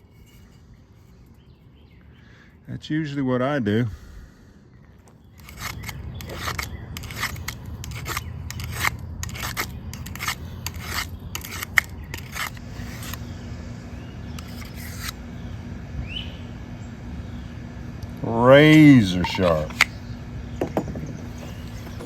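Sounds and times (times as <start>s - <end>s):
knife scraping wood: 0.0s - 0.7s, 5.4s - 13.3s, 14.3s - 15.2s, 18.7s - 20.0s, 20.8s - 22.0s.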